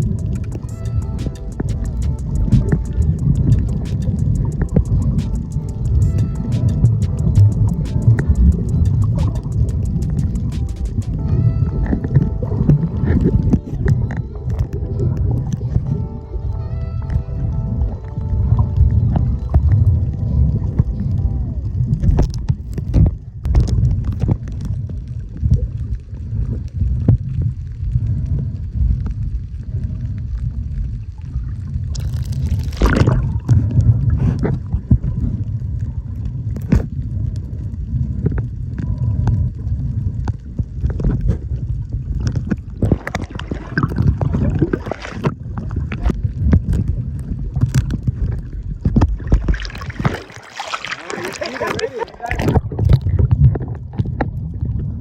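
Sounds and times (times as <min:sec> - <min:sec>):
steady low rumble: 0:00.0 - 0:55.0
water sloshing and gurgling: 0:00.0 - 0:55.0
knocks and splashes: 0:42.2 - 0:47.0, 0:47.6 - 0:54.4.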